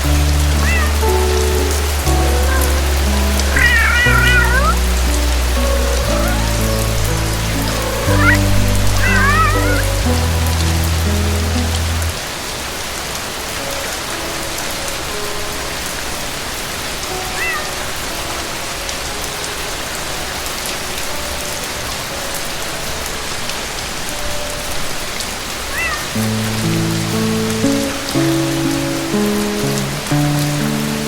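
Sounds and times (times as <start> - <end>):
high chirps: 0.0 - 12.2
soft low music notes: 0.0 - 12.5, 26.2 - 31.0
steady rain hiss: 0.0 - 31.0.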